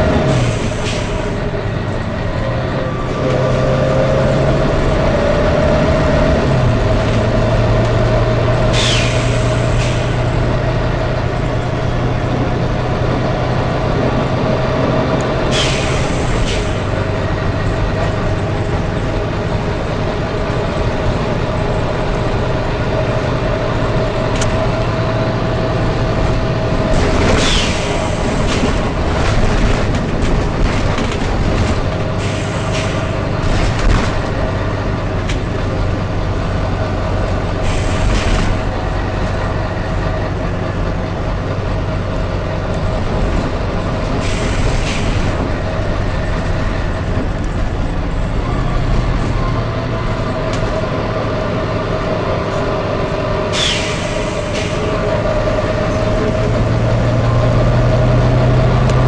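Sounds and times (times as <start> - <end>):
bus engine hum: 0.0 - 59.0
compressed air hisses: 8.7 - 10.1, 15.5 - 16.8, 53.5 - 54.8.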